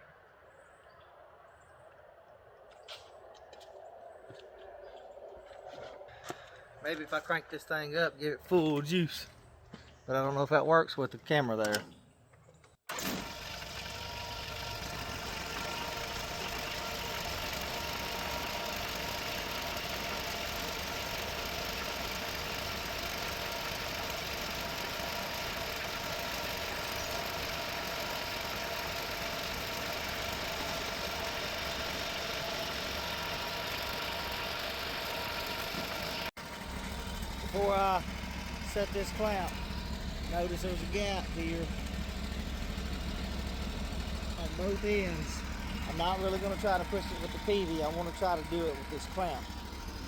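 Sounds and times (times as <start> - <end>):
engine running steadily: 12.9 - 50.0.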